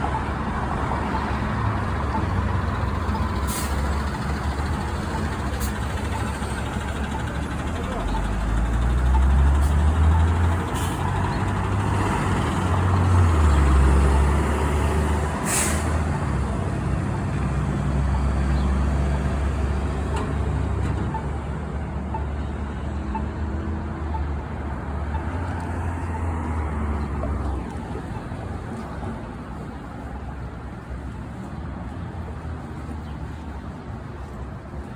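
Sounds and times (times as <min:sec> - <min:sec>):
bus engine rumbling: 0:00.0 - 0:34.9
air brake hiss: 0:03.4 - 0:04.0, 0:15.4 - 0:16.0.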